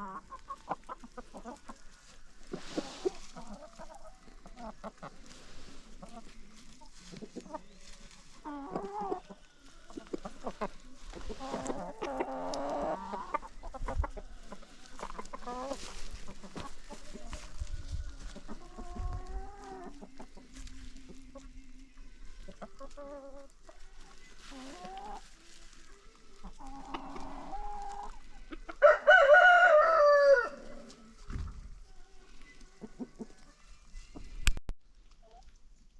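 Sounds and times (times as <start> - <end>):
chickens clucking: 0.0 - 35.9
rooster crowing: 28.8 - 30.8.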